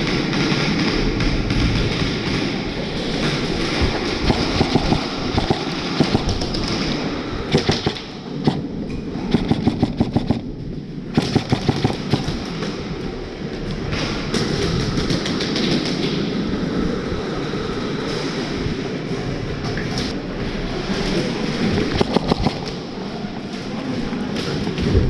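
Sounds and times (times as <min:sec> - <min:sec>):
steady noisy background: 0:00.0 - 0:25.0
airsoft guns firing bursts: 0:03.2 - 0:08.6, 0:09.3 - 0:10.5, 0:11.1 - 0:12.6, 0:21.9 - 0:22.7.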